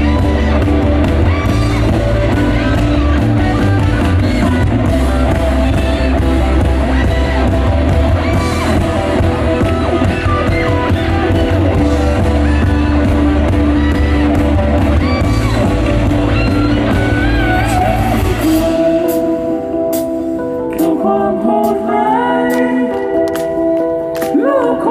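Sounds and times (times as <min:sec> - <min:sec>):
rock band playing: 0:00.0 - 0:24.4
person singing a melody: 0:16.4 - 0:23.6, 0:24.2 - 0:24.9.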